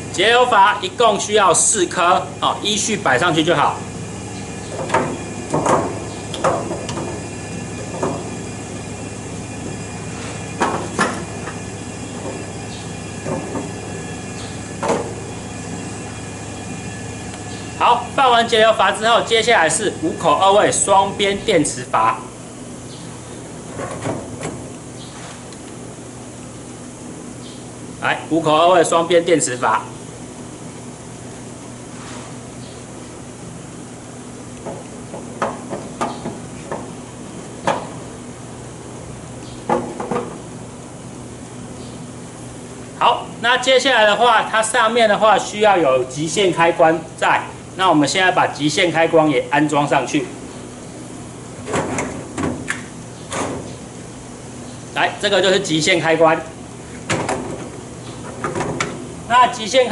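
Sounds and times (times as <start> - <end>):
steady hum: 0.0 - 59.9
valves knocking on metal panel: 4.7 - 7.2, 7.8 - 8.3, 10.6 - 12.5, 13.2 - 13.7, 14.7 - 15.3, 34.6 - 37.0, 39.6 - 40.4.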